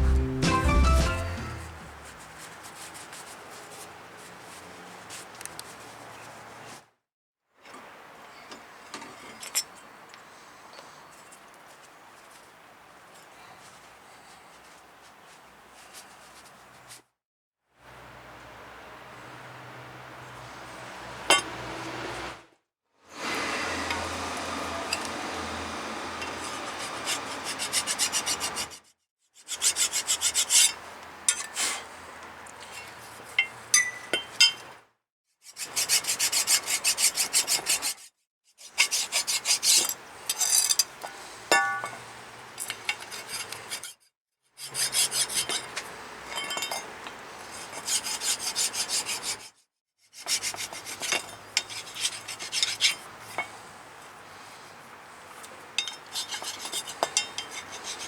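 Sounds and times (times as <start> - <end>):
hand tool scraping metal: 23.2 - 28.8, 29.5 - 31.9, 38.7 - 44.0, 44.6 - 49.4, 50.2 - 53.7, 55.8 - 58.0.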